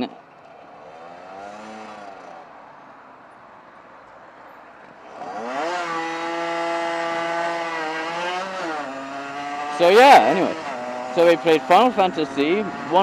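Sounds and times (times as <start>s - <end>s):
two-stroke motorcycle engine revving: 0.0s - 2.5s, 5.1s - 13.0s.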